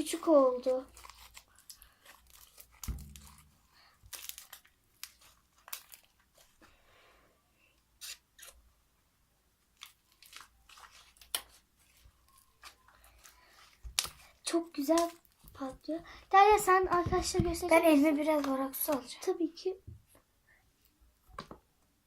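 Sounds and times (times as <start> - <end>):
slime crackling and popping: 0.1 - 6.5, 9.8 - 15.7.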